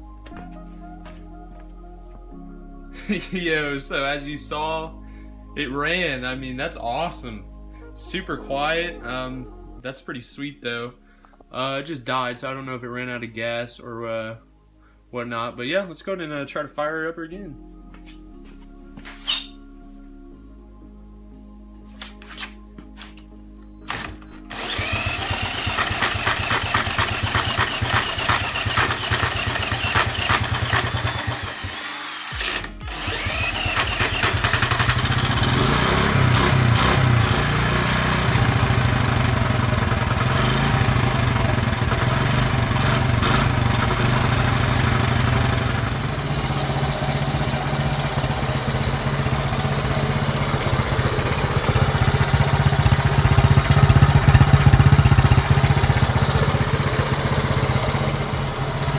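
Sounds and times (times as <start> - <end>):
small engine revving and idling: 23.9 - 58.9.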